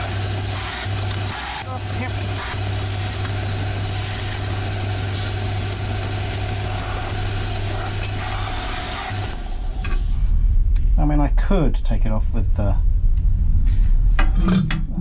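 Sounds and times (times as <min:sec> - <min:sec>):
belt grinder grinding metal: 0:00.0 - 0:09.4
motor hum: 0:00.0 - 0:11.6.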